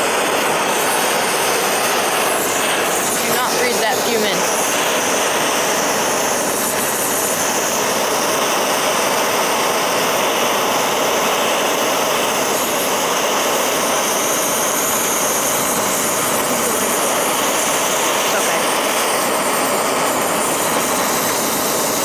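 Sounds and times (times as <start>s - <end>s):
torch flame hissing: 0.0s - 22.0s.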